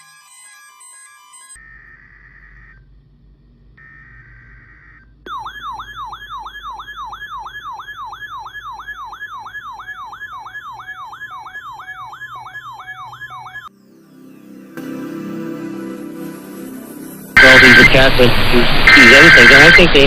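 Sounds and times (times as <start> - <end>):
electronic yelp siren: 0.0 - 3.0, 3.8 - 13.7, 17.4 - 18.1, 18.9 - 20.0.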